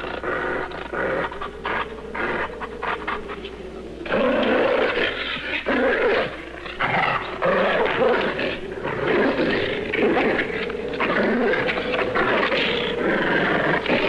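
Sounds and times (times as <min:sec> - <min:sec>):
beast snarling and growling: 0:04.0 - 0:14.0.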